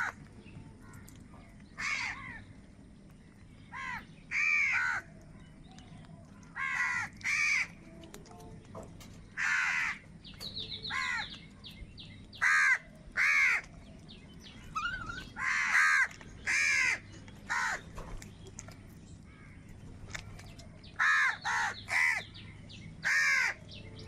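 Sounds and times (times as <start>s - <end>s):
crows cawing: 1.8s - 2.5s, 3.7s - 5.1s, 6.6s - 7.7s, 9.4s - 10.1s, 10.9s - 11.3s, 12.4s - 13.7s, 15.0s - 17.8s, 21.0s - 22.3s, 23.0s - 23.6s.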